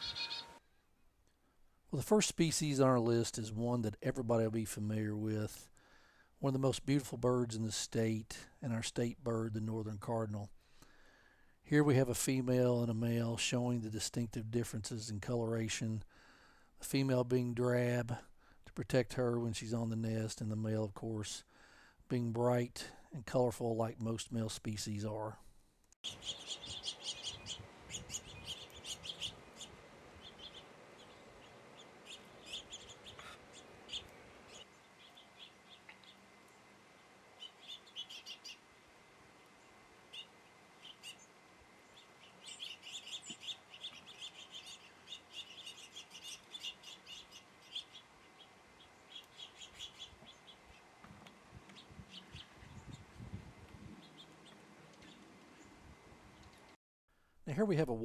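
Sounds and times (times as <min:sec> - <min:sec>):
small songbirds chirping: 0:00.0 - 0:00.6, 0:26.0 - 0:56.8.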